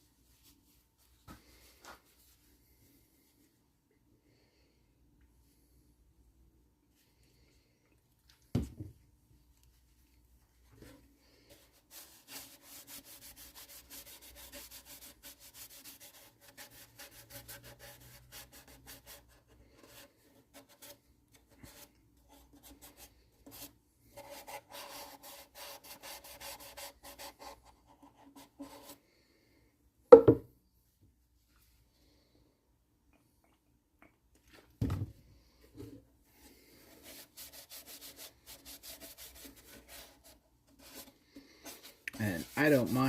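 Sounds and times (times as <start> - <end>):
paper towel rubbing on wood: 11.4 - 29.0, 36.8 - 43.0
loud knock: 30.1 - 30.4.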